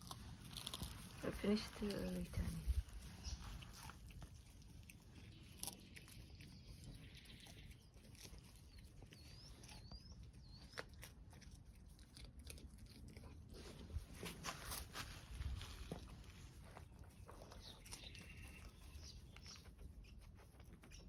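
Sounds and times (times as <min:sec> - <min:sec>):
dog chewing a treat: 0:00.0 - 0:01.2, 0:03.5 - 0:14.2.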